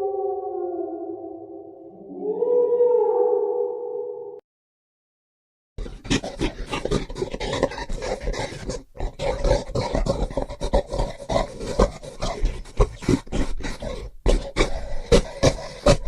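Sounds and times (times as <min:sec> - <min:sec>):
gorilla grunting and huffing: 0:05.8 - 0:16.0.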